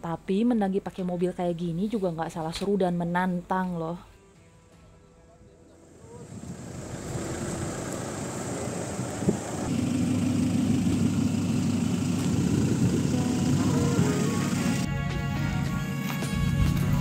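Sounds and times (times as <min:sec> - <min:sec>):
engine rumbling: 0:05.5 - 0:14.9.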